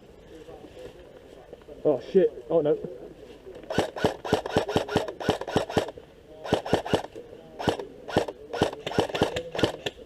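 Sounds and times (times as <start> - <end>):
airsoft gun shots: 3.7 - 10.0.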